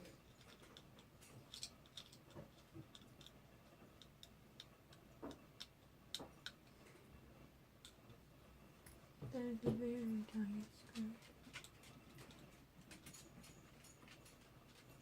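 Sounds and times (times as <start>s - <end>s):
small plastic clicks and ticks: 0.0s - 6.7s.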